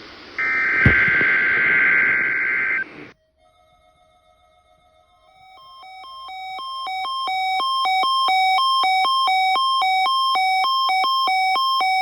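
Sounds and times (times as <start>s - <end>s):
weather radio alarm beeping: 0.0s - 3.1s.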